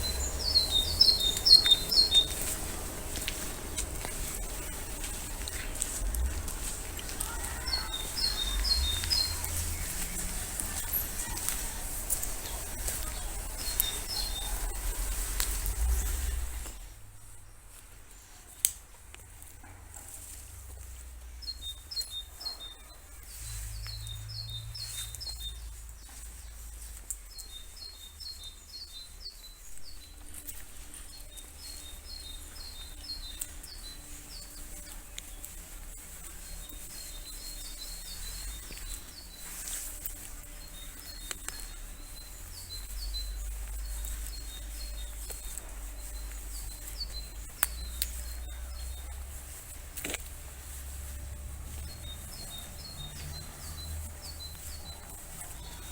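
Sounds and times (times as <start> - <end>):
low rumble: 0.0 - 18.4
songbird singing: 0.0 - 55.9.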